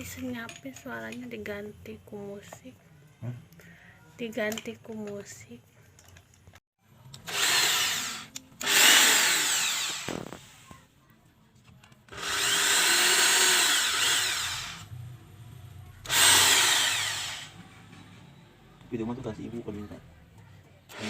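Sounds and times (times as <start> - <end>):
electric drill boring into wood: 7.2 - 10.4, 12.1 - 14.9, 16.0 - 17.6.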